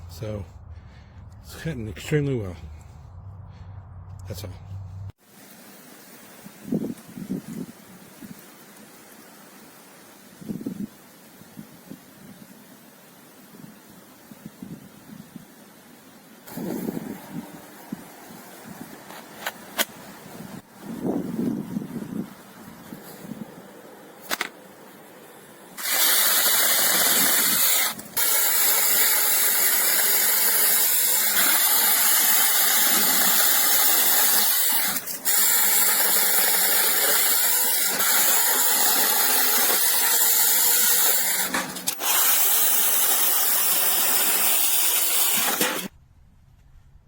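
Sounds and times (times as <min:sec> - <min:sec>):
cordless chainsaw running: 0:25.8 - 0:45.9.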